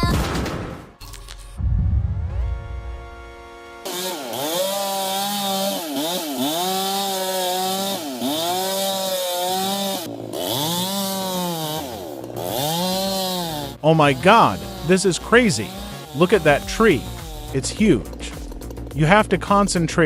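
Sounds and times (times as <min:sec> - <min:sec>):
chainsaw cutting at high revs: 0:03.6 - 0:19.4.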